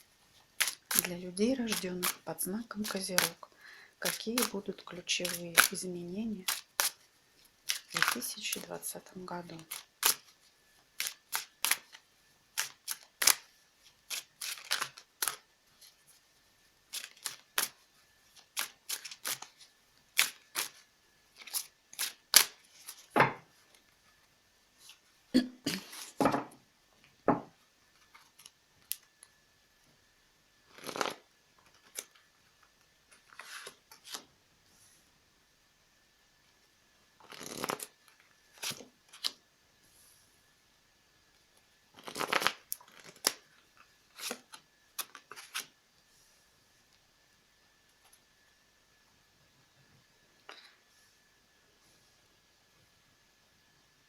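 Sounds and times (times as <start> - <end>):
cards being shuffled: 0.5 - 3.4, 4.0 - 16.2, 16.9 - 23.8, 30.7 - 32.2, 33.1 - 34.3, 37.2 - 39.4, 42.0 - 43.4, 44.1 - 45.7.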